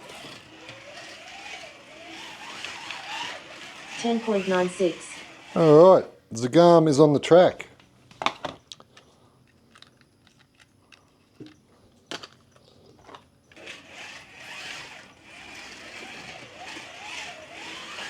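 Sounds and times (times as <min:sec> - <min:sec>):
slot car electric motor whining: 0:00.0 - 0:06.0, 0:13.5 - 0:18.0.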